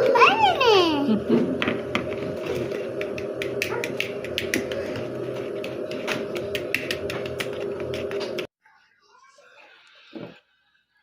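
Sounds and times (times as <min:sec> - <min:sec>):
whisk clicking against bowl: 0:02.9 - 0:08.5.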